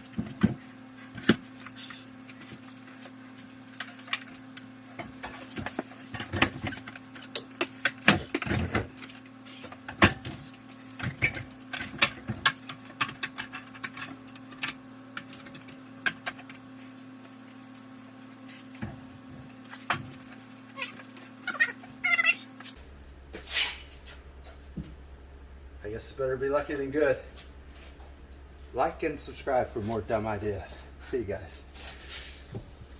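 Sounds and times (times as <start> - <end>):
steady hum: 0.0 - 32.9.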